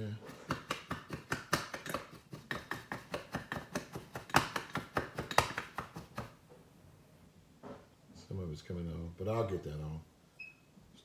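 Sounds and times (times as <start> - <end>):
rapid tapping on hard surface: 0.3 - 6.4.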